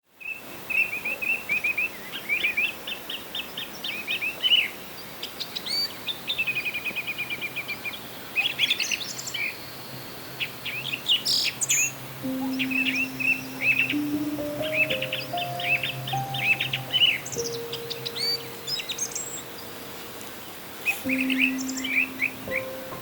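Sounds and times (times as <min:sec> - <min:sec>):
songbirds chirping: 0:01.9 - 0:23.0
rapid bird trill: 0:11.2 - 0:19.9.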